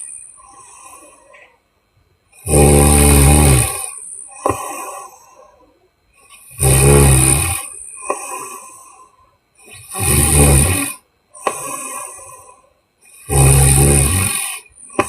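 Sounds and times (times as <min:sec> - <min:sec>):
woman snoring loudly: 0:02.4 - 0:04.0, 0:06.5 - 0:07.8, 0:09.7 - 0:11.7, 0:13.2 - 0:15.0.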